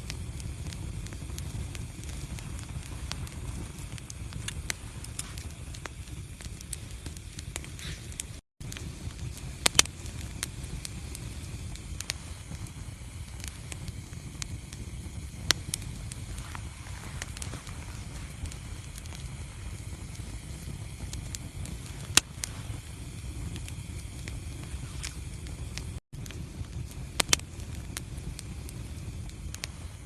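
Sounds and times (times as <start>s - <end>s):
low steady rumble: 0.0s - 30.0s
sharp fire pops: 0.0s - 30.0s
wood fire crackling: 0.0s - 30.0s.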